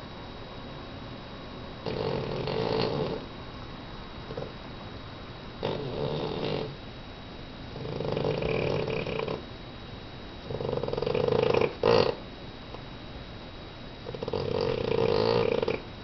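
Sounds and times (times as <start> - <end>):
dog snoring: 1.8 - 3.3, 4.3 - 4.6, 5.6 - 6.8, 7.7 - 9.4, 10.4 - 12.2, 14.0 - 15.8.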